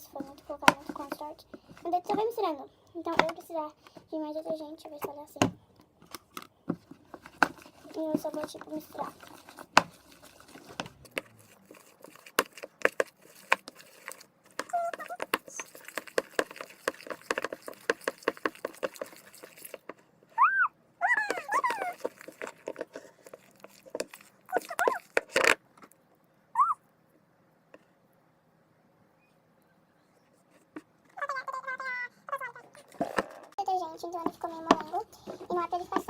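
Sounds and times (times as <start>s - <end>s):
slime stirred in a cup: 0.0s - 3.5s, 6.2s - 20.0s, 21.2s - 25.6s, 32.8s - 36.0s
short high whining calls: 20.4s - 20.8s, 26.6s - 26.8s.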